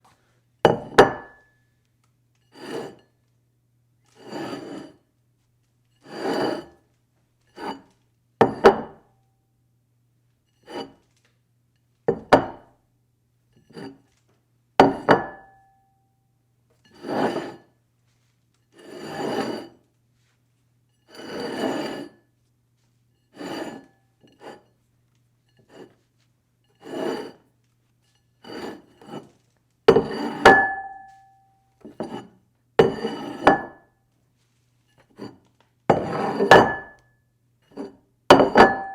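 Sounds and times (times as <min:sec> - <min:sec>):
dish knocking and clinking: 0:00.7 - 0:01.5, 0:08.4 - 0:09.0, 0:12.1 - 0:12.6, 0:14.8 - 0:15.6, 0:29.9 - 0:31.3, 0:35.9 - 0:37.0, 0:38.3 - 0:38.9
dish scraping across table: 0:02.5 - 0:03.1, 0:04.2 - 0:05.0, 0:06.0 - 0:06.8, 0:07.5 - 0:09.0, 0:10.6 - 0:11.0, 0:16.9 - 0:17.7, 0:18.7 - 0:19.8, 0:21.1 - 0:22.2, 0:23.3 - 0:24.7, 0:25.6 - 0:26.0, 0:26.7 - 0:27.5, 0:28.4 - 0:31.1, 0:31.8 - 0:33.8, 0:35.0 - 0:37.0.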